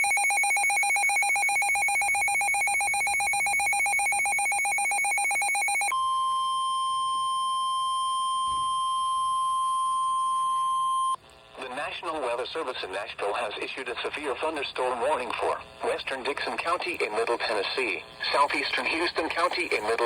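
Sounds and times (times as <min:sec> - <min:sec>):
rapid electronic beeping: 0:00.0 - 0:05.9
steady alarm tone: 0:00.0 - 0:11.2.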